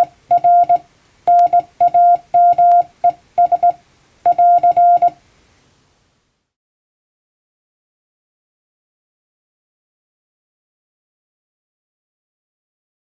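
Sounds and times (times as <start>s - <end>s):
morse code beeps: 0.0s - 5.2s.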